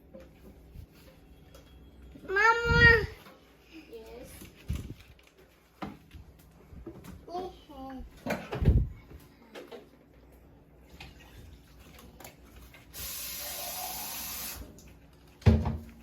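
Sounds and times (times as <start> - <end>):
spray or running water hiss: 12.9 - 14.7.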